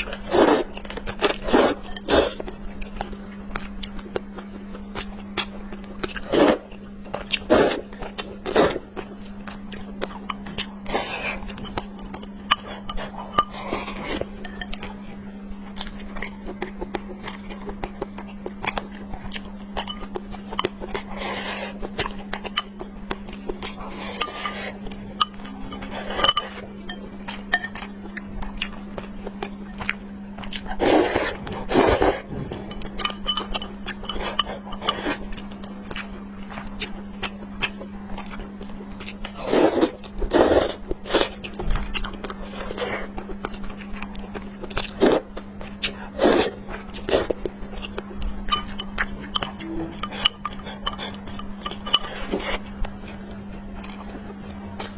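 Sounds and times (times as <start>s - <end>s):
chewing and mouth noises: 0.0s - 54.9s
steady low hum: 0.0s - 54.9s
utensils clinking on bowl: 1.5s - 2.3s, 11.5s - 14.9s, 19.8s - 21.6s, 22.4s - 22.8s, 23.7s - 27.9s, 31.6s - 35.5s, 48.4s - 52.6s.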